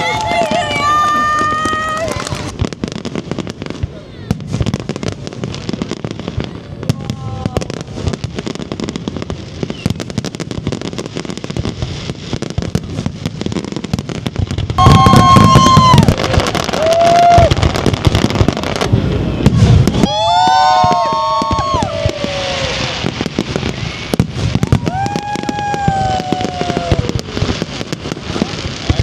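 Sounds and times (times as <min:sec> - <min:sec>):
onlookers whooping: 0:00.0 - 0:02.5, 0:14.8 - 0:23.4, 0:24.4 - 0:27.6
fireworks crackling and popping: 0:00.0 - 0:29.0.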